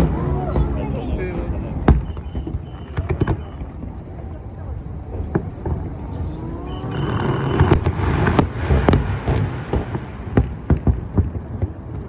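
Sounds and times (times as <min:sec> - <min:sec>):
fireworks banging: 0:00.0 - 0:12.0
low background noise: 0:00.0 - 0:12.0.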